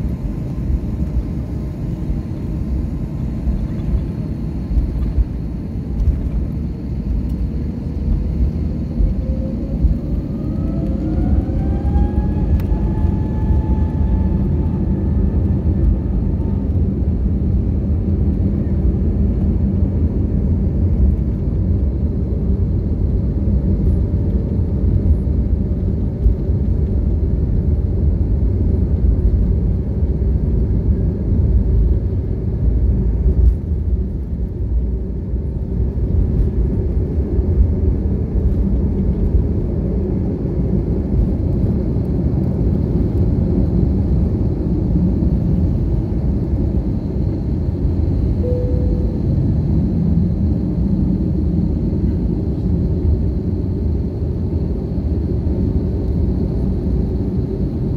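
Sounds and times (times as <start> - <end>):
faint high whine: 0.0 - 17.2, 45.2 - 57.9
jet cabin engine rumble: 0.0 - 57.9.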